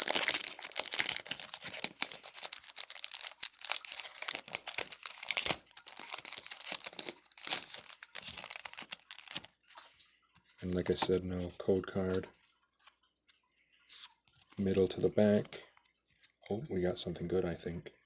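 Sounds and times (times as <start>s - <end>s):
foil wrapper tearing and crinkling: 0.0s - 9.9s.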